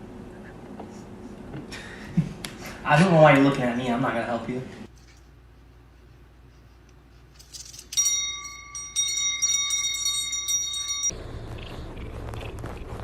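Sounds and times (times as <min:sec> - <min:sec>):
ringing bell-like tone: 0:07.9 - 0:11.2.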